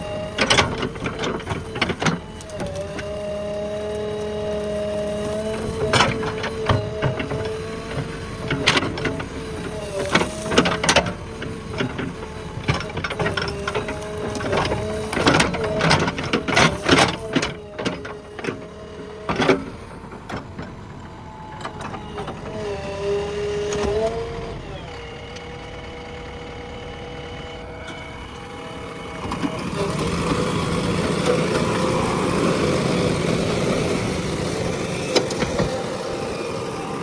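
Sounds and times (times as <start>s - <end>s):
machine knocks and clanks: 0.0s - 22.4s
diesel engine running: 0.0s - 37.0s.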